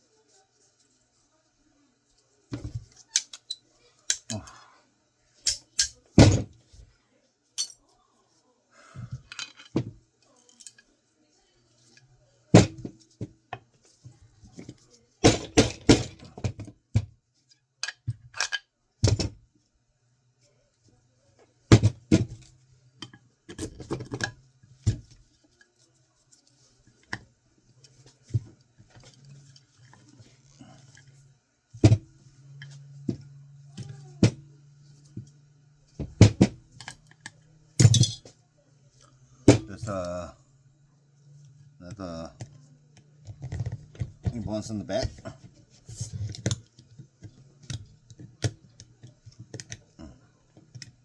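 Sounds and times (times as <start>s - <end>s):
small parts clicking and clinking: 3.0s - 4.6s, 5.5s - 6.0s, 7.6s - 7.8s, 9.3s - 9.8s, 10.4s - 10.8s, 36.8s - 38.3s.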